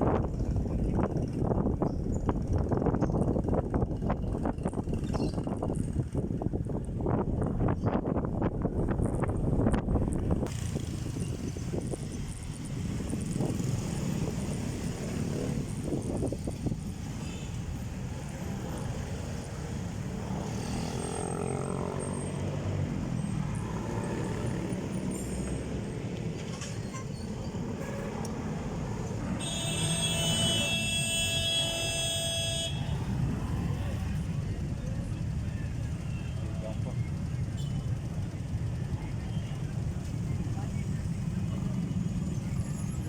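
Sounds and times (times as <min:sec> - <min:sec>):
wind rumble: 0:00.0 - 0:29.4
road traffic: 0:00.0 - 0:43.0
vehicle horn: 0:29.4 - 0:33.1.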